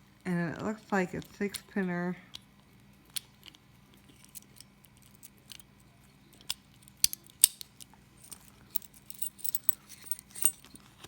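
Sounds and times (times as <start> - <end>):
practice lock clicks and taps: 6.3 - 7.8.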